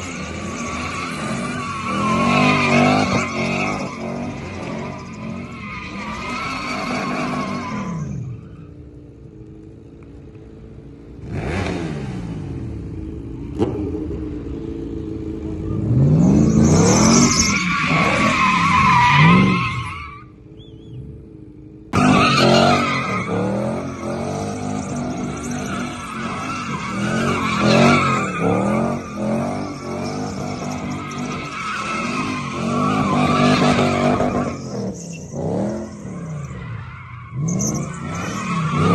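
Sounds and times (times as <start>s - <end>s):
car engine revving: 0.0s - 8.4s, 11.1s - 20.8s, 21.4s - 38.9s
tyres squealing: 22.0s - 38.9s.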